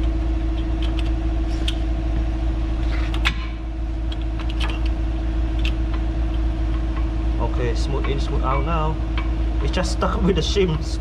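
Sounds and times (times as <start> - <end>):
machine hum: 0.0 - 11.0.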